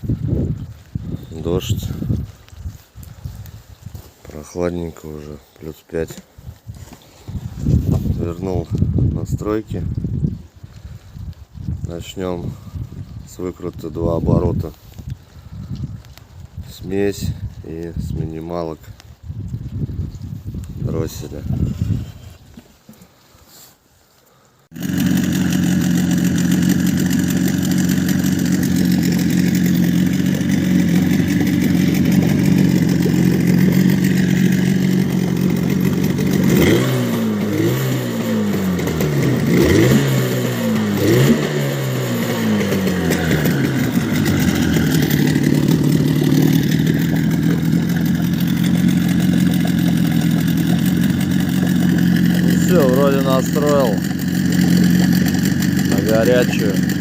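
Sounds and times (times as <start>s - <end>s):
motor revving: 24.7s - 57.0s
outboard motor idling: 24.7s - 57.0s.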